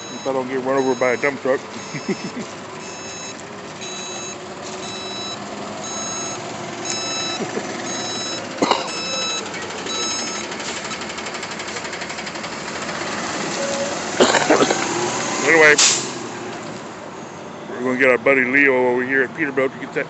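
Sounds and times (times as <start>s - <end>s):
truck backup alarm beeping: 0.0s - 14.4s
truck engines running: 0.0s - 20.0s.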